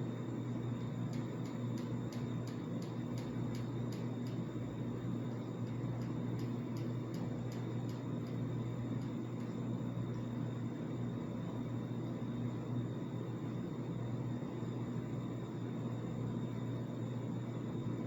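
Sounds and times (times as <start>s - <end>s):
steady low hum: 0.0s - 18.0s
regular light ticking: 0.8s - 4.5s, 5.6s - 9.5s.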